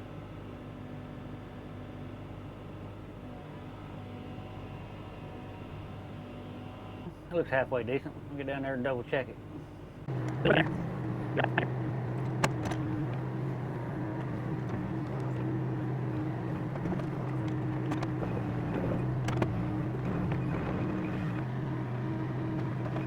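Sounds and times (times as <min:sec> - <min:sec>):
excavator diesel engine idling: 0:10.0 - 0:23.0.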